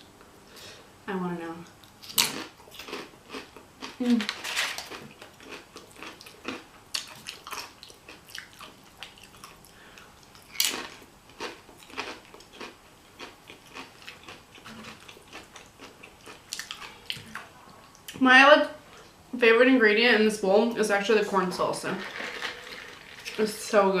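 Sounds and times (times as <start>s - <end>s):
close-up chewing mouth sounds: 4.8s - 18.2s.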